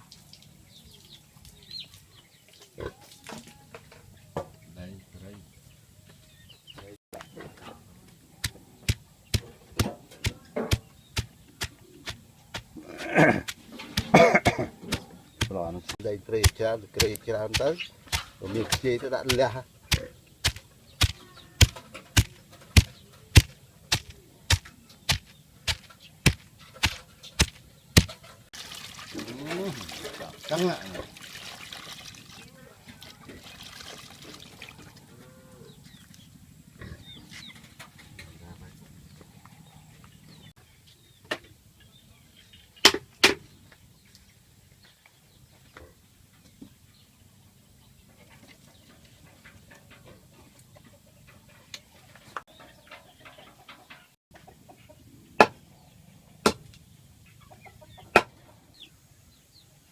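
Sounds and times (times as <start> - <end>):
sharp knocks: 8.4 - 12.7, 13.4 - 15.6, 16.4 - 28.2.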